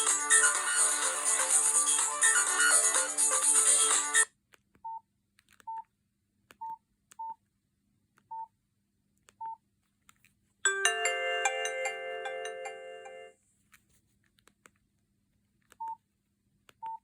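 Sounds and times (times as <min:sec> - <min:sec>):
chiming ringtone melody: 0:00.0 - 0:04.2, 0:10.7 - 0:13.4
phone ringtone: 0:00.0 - 0:04.3, 0:10.7 - 0:13.4
keypad beeps: 0:16.8 - 0:17.0.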